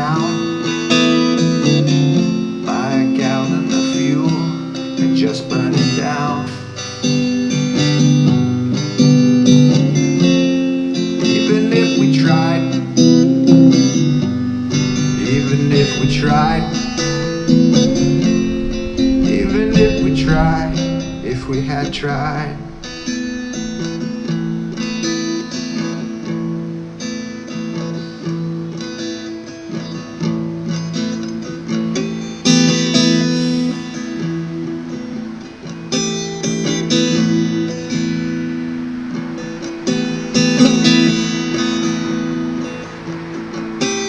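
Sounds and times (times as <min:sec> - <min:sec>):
acoustic guitar strumming: 0:00.0 - 0:44.0.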